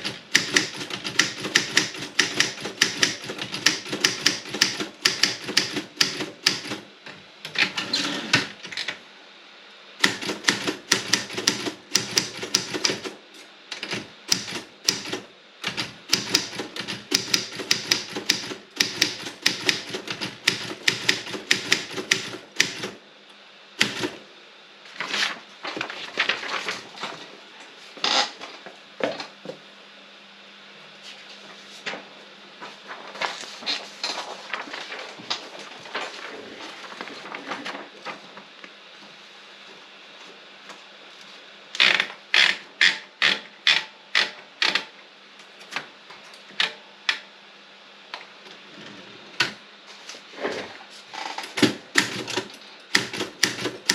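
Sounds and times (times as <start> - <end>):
typewriter key strikes: 0.3 - 6.8.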